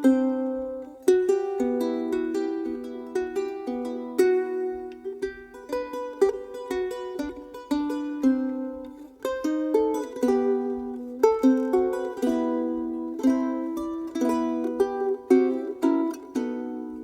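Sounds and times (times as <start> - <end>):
ukulele playing: 0.0 - 17.0.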